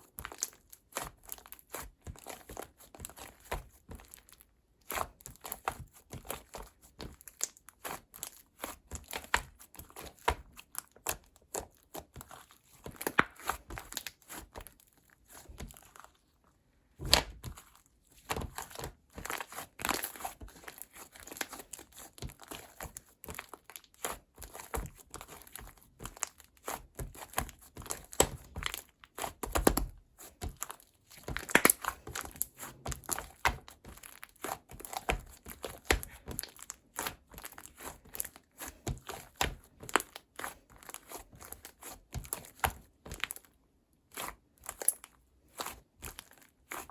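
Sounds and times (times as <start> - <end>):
slime squishing and popping: 17.0 - 43.4.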